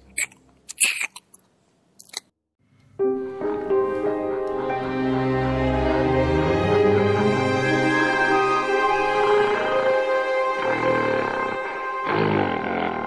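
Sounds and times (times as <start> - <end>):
background music with sustained notes: 2.8 - 13.0.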